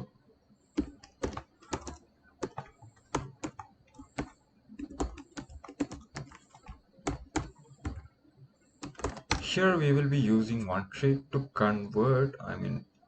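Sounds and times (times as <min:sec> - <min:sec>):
keyboard typing clicks: 0:00.8 - 0:08.1, 0:08.8 - 0:09.5.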